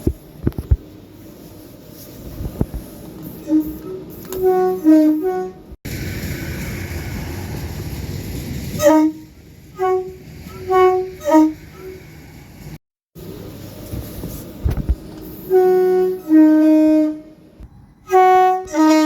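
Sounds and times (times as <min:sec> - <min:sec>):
train horn blasts: 0:03.4 - 0:05.8, 0:08.8 - 0:12.0, 0:15.4 - 0:19.0
steady rushing noise: 0:05.9 - 0:12.8.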